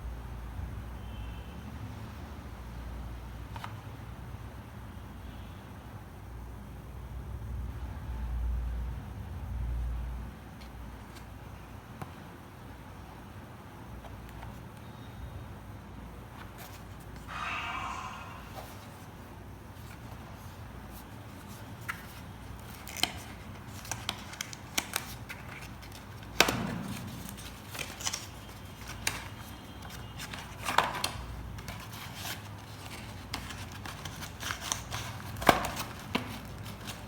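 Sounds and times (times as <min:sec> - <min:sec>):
headset being handled: 0:19.8 - 0:37.0
packaging rustling and clicking: 0:21.0 - 0:37.0.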